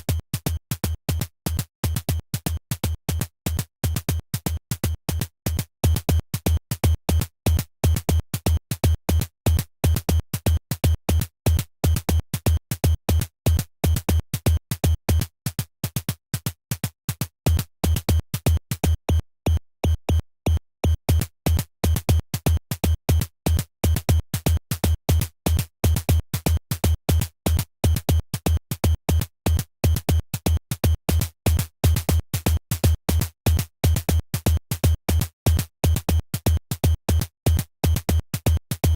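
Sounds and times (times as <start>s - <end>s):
bit-crushed synthesized kick drum: 17.5s - 38.9s.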